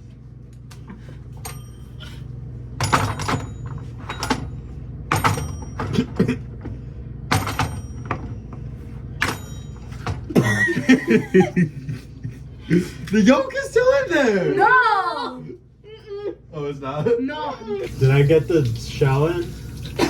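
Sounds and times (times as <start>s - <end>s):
bowl ringing: 1.4s - 4.7s, 7.7s - 11.2s.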